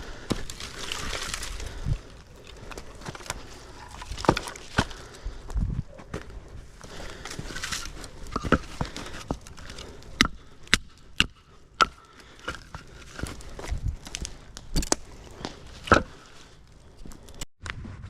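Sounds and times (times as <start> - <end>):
logs knocking together: 0.0 - 5.2, 6.0 - 16.4
wood rustling: 0.0 - 17.5.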